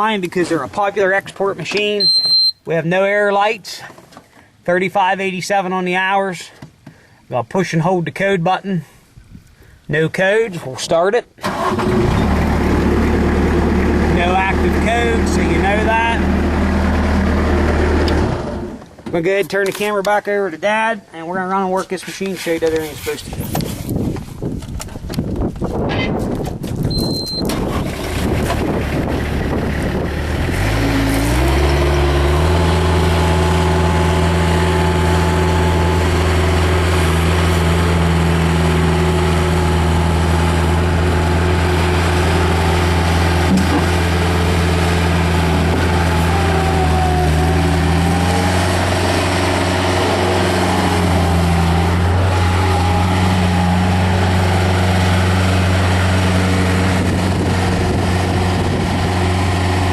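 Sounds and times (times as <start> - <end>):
diesel engine revving: 11.4 - 19.0, 27.0 - 59.9.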